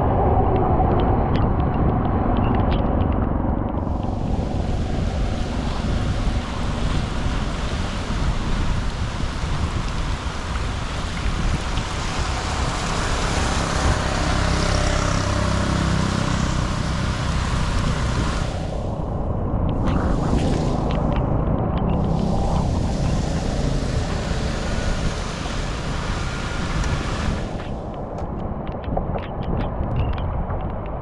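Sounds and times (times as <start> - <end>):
wind buffeting microphone: 0.0 - 31.0
water rushing: 3.7 - 21.2, 21.8 - 28.4.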